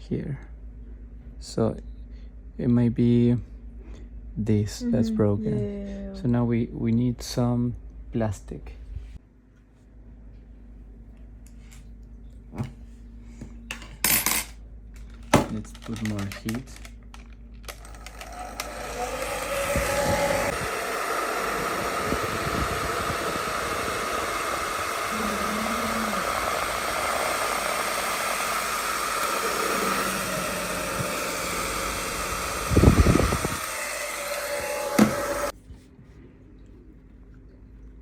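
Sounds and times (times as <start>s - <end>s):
hot-air blower running: 17.6s - 35.6s.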